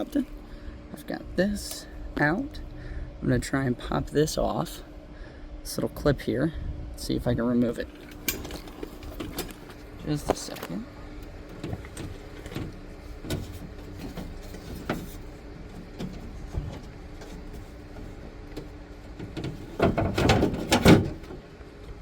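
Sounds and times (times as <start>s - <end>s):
faint steady hum: 0.0s - 22.0s
metal rattling and scraping: 7.8s - 10.7s, 11.3s - 21.4s.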